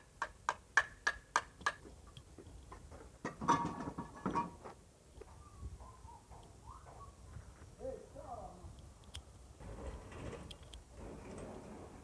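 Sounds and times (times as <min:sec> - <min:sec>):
rough scraping noise: 0:09.6 - 0:12.0.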